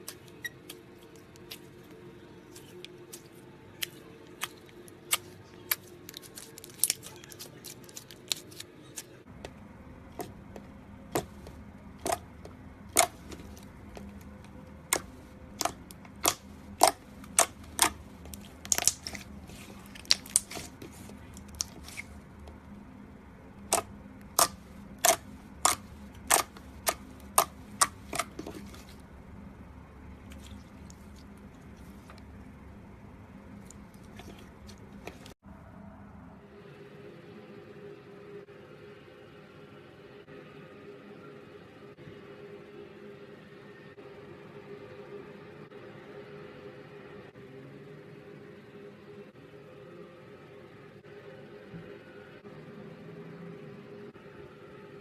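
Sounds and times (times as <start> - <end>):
slime clicking and popping: 14.9 - 19.2, 23.7 - 28.5.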